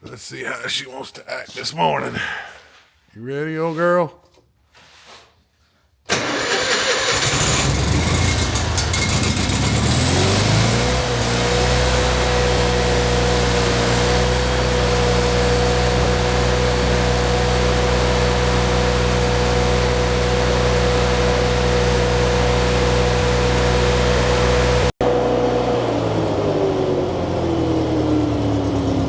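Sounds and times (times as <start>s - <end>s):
welding machine engine running: 7.1s - 24.9s.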